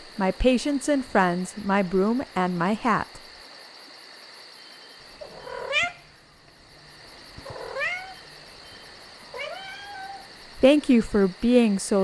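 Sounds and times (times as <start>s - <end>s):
crickets chirping: 0.0s - 12.0s
cat meowing: 7.4s - 8.2s, 9.3s - 10.3s.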